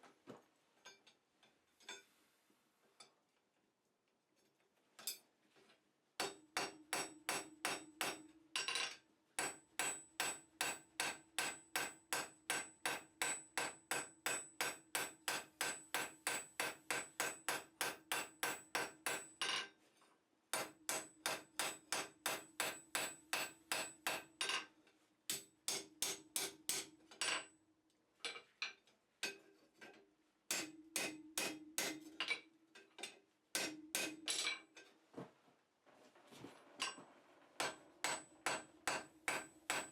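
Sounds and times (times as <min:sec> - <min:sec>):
hammer ringing on anvil: 0:09.4 - 0:19.3, 0:20.6 - 0:24.3, 0:37.6 - 0:39.9.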